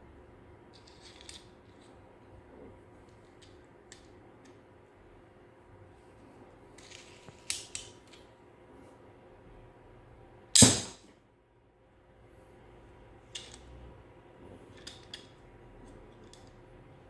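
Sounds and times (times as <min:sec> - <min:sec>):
crossbow snap: 0:10.6 - 0:11.0.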